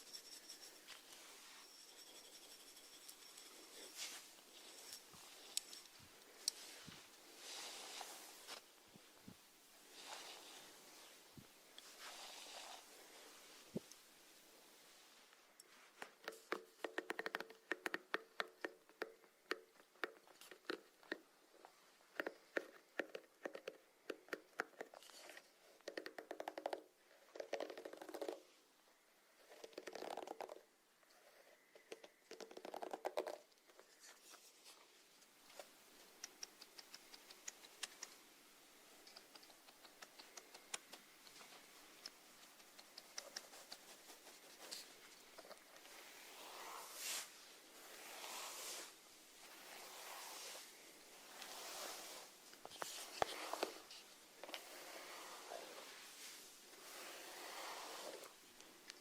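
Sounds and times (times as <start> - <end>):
snails clicking and scratching: 16.0 - 28.6, 29.3 - 34.4, 35.5 - 47.2.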